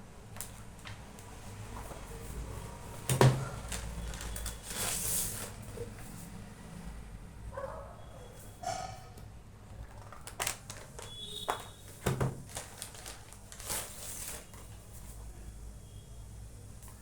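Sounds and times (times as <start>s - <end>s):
packaging crinkling: 0.4s - 6.1s, 9.7s - 15.2s.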